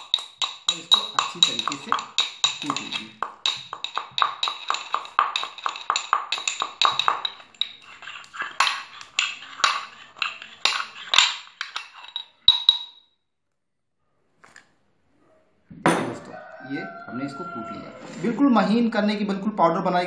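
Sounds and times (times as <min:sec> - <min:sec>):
pestle pounding in mortar: 0:00.0 - 0:12.8.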